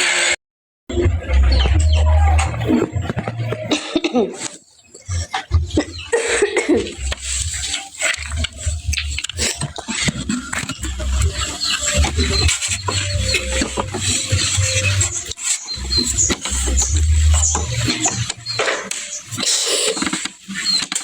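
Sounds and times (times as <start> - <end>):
woman coughing: 6.2 - 6.9.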